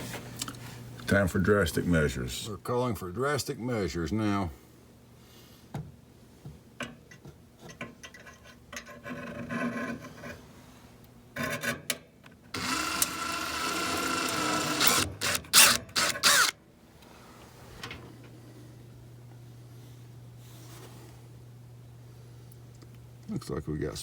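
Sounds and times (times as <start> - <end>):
small handheld power tool running: 12.6 - 16.6.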